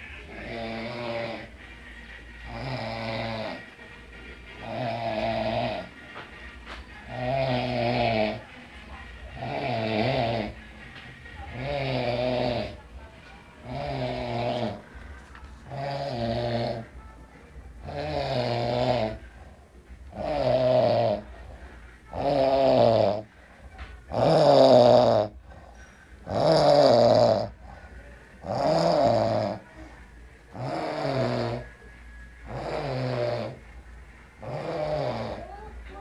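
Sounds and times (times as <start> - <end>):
man snoring: 0.3 - 1.5, 2.4 - 3.7, 4.6 - 6.0, 7.0 - 8.4, 9.4 - 10.6, 11.6 - 12.8, 13.6 - 14.8, 15.7 - 16.9, 17.8 - 19.2, 20.1 - 21.3, 22.1 - 23.3, 24.1 - 25.4, 26.2 - 27.6, 28.4 - 29.6, 30.5 - 31.7, 32.4 - 33.6, 34.4 - 35.7.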